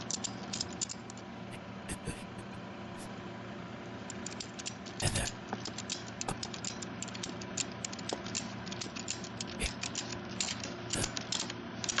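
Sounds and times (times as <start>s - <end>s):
ratchet strap pawl clicking: 4.1s - 12.0s.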